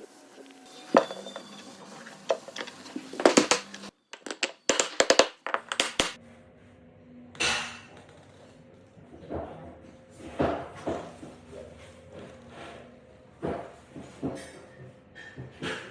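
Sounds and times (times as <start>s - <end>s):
carpentry knocks and clicks: 2.3s - 6.2s.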